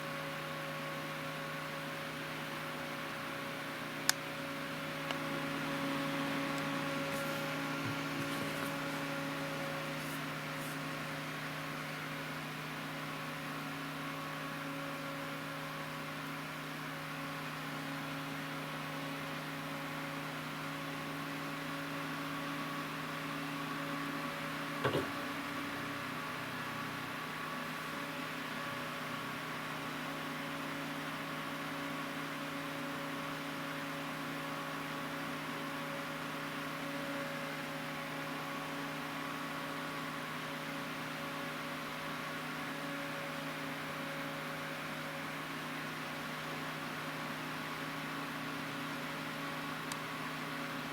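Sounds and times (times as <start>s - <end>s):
fan humming with airy hiss: 3.8s - 11.1s.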